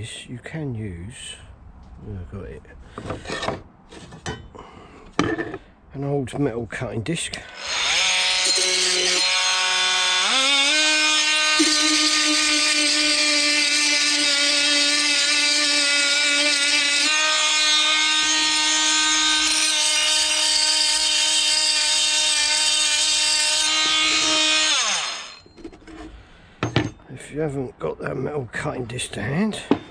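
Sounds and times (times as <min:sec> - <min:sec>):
blade grinding against metal disc: 0:07.5 - 0:26.1
oscillating multi-tool running: 0:17.8 - 0:25.4.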